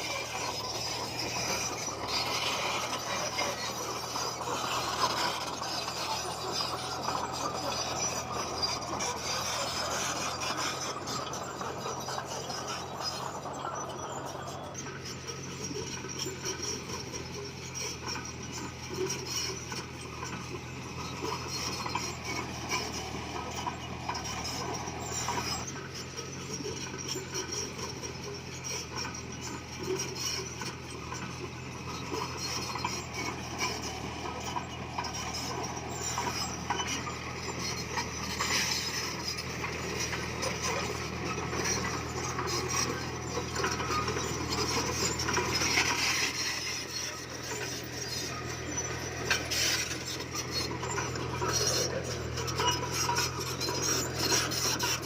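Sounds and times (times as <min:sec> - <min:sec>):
bulldozer diesel engine running: 0:00.0 - 0:55.0
steel tracks clanking: 0:00.0 - 0:55.0.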